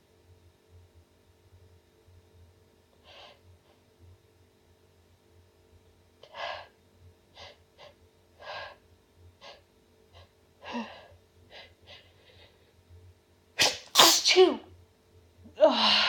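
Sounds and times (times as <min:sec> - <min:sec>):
woman's gasping breaths: 0:10.6 - 0:12.8.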